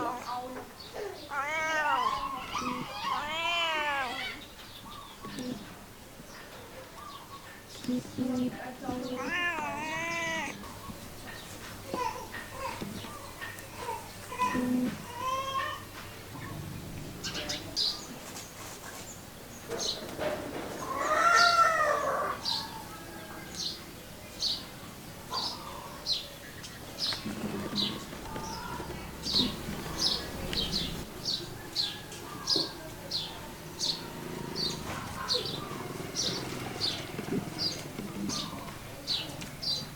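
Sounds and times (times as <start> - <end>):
small birds chirping: 0.0 - 20.1, 20.8 - 39.9
cat meowing: 1.0 - 4.4, 9.1 - 10.6.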